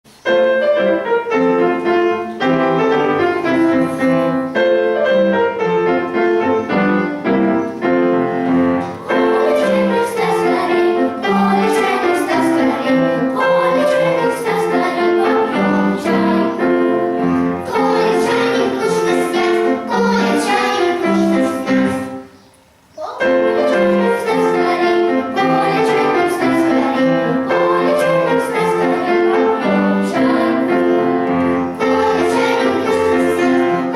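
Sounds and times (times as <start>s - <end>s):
piano playing: 0.1s - 22.4s, 23.0s - 33.9s.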